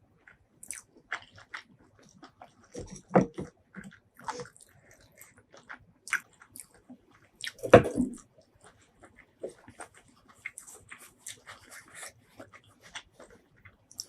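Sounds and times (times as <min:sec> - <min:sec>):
wet chewing and biting clicks: 0:00.2 - 0:02.8, 0:03.8 - 0:14.0.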